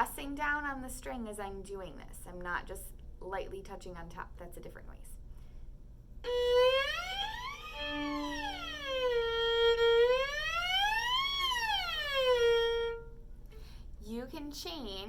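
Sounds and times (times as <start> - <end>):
violin glissando: 6.3 - 13.2.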